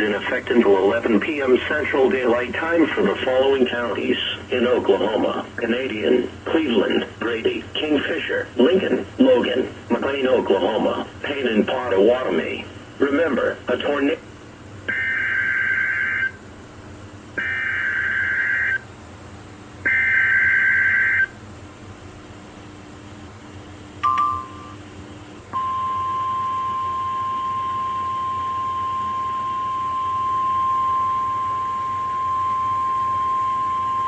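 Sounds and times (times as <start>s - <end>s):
steady warning alarm tone: 14.9s - 16.4s, 17.4s - 18.8s, 19.9s - 21.4s, 25.5s - 34.0s.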